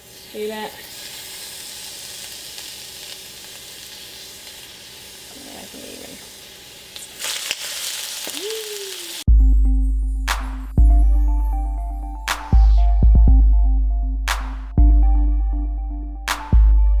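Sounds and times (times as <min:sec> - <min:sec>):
beef sizzling in oil: 0:00.0 - 0:09.3.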